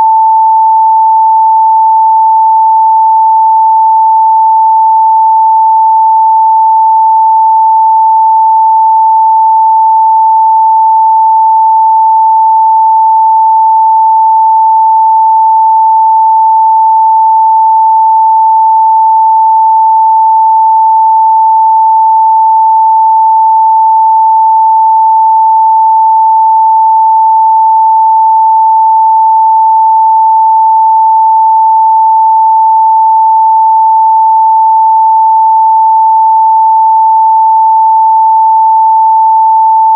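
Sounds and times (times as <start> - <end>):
sine wave test tone: 0.0 - 39.9.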